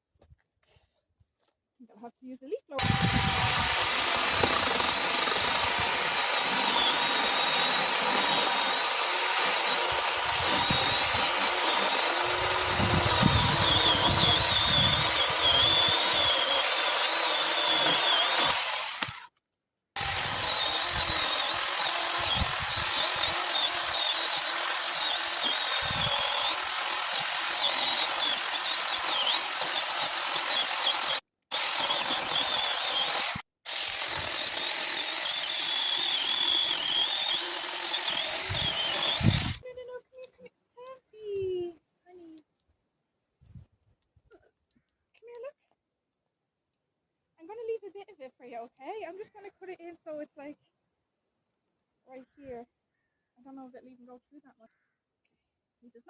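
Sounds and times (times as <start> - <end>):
leaf blower running: 2.8 - 19.2, 20.0 - 39.6.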